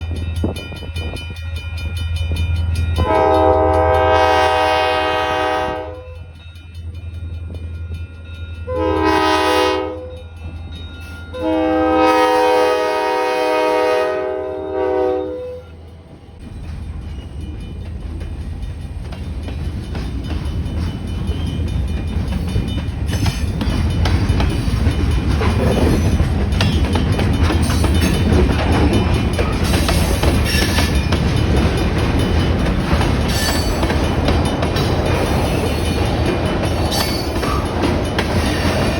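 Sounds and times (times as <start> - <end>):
freight train rattling past: 0.0 - 38.9
locomotive horn blasts: 3.0 - 6.3, 8.7 - 10.2, 11.3 - 15.8.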